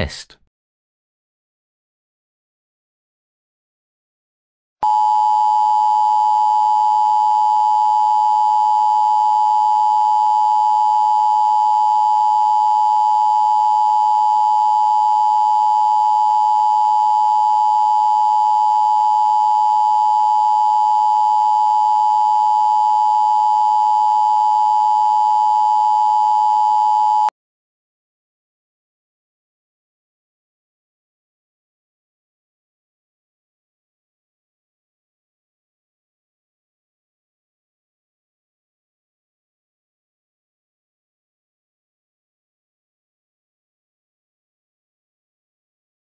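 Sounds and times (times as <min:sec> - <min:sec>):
two-tone alert alarm: 0:04.8 - 0:27.3.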